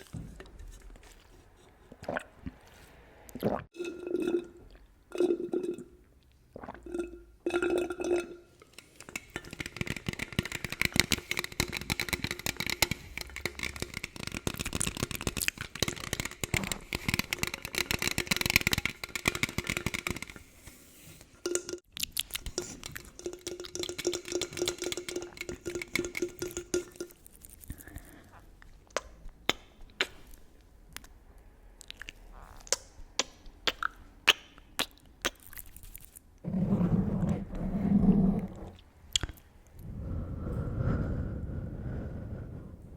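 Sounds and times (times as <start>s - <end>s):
taps and clicks on can: 9.0s - 20.4s.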